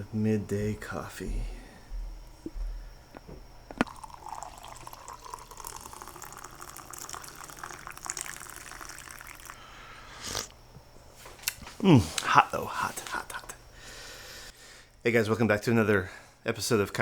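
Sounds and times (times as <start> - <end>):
liquid pouring and gurgling: 3.8 - 9.6.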